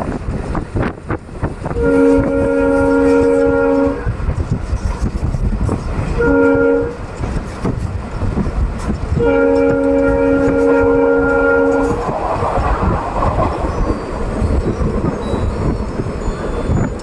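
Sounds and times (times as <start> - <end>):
moving train rumble and clatter: 0.0 - 17.0
locomotive horn blasts: 1.7 - 4.2, 6.2 - 7.0, 9.2 - 12.1.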